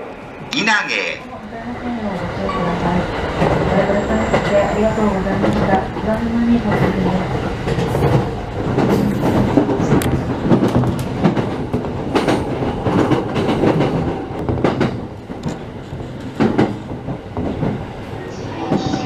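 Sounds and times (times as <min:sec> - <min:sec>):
electric train passing: 0:00.0 - 0:19.0.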